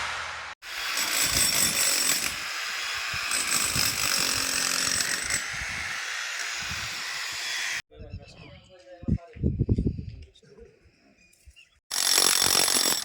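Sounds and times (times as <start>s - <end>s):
power tool high whine: 0.0s - 7.8s.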